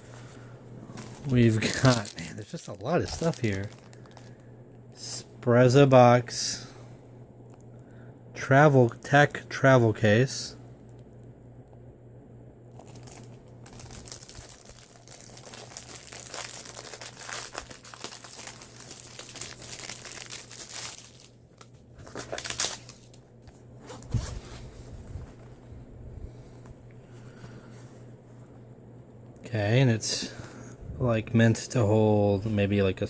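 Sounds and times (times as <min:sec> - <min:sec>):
packaging crinkling and tearing: 0:00.9 - 0:04.4, 0:12.7 - 0:25.5.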